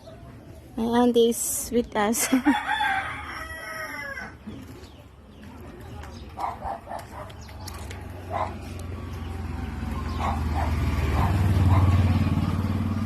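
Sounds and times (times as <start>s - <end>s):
dog barking: 6.4s - 7.4s, 8.2s - 8.8s, 10.1s - 12.1s
motor engine droning: 8.3s - 13.0s.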